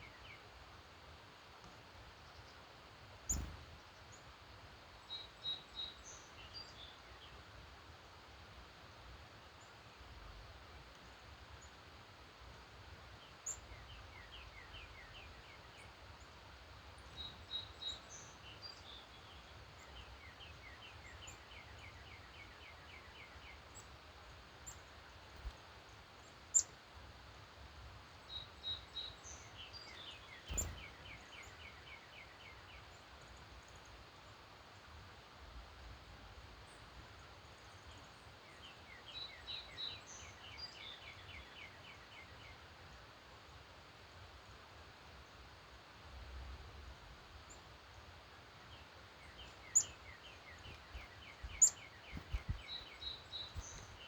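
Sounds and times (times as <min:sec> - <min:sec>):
faint background hiss: 0:00.0 - 0:54.0
birds chirping: 0:29.9 - 0:31.7, 0:49.2 - 0:54.0.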